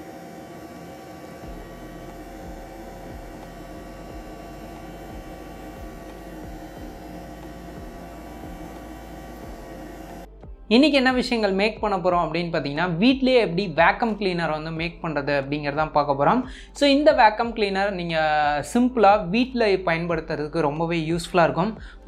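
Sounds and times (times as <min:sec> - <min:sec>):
small motor fan humming: 0:00.0 - 0:10.3
deeper hum: 0:00.0 - 0:12.0.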